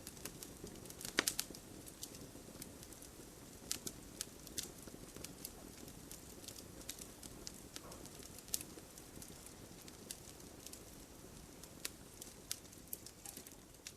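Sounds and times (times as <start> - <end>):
wood fire crackling: 0.0 - 13.9.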